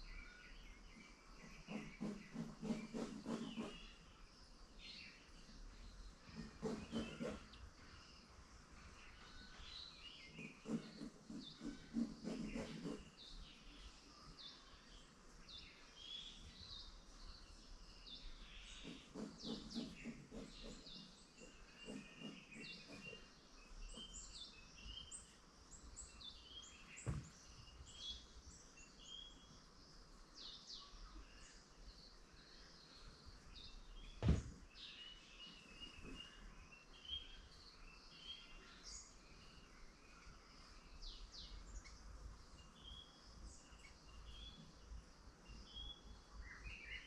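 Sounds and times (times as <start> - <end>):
small birds chirping: 0.0 - 47.0
rough pulsing animal calls: 6.3 - 7.5.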